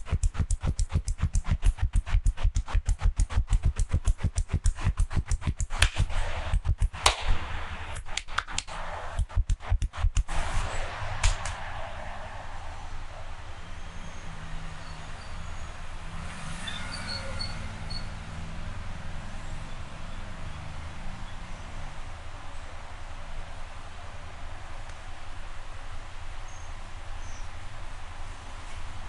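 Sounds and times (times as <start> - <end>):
hands striking in massage strokes: 0.0 - 11.8
hands rubbing hiss: 0.0 - 12.7.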